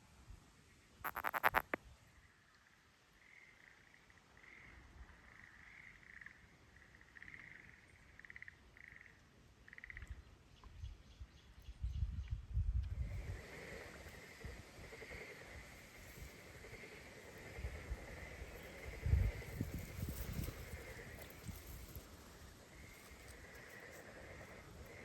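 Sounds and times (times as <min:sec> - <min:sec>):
frogs calling: 0:01.0 - 0:01.8
pulsed frog trills: 0:01.0 - 0:01.8.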